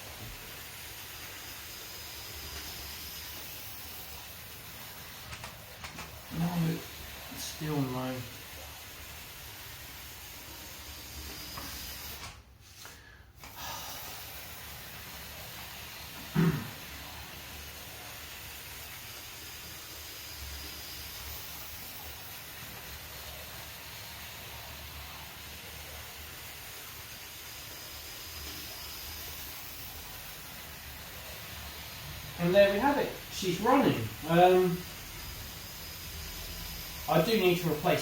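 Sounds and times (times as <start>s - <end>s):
model train running on rails: 17.2s - 38.0s.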